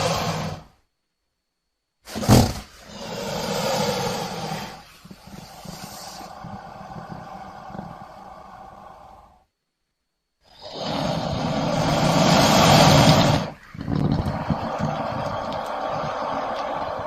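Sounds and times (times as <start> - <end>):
monster roar: 2.9 - 4.8, 10.5 - 17.0
low rumbling call: 10.7 - 17.0.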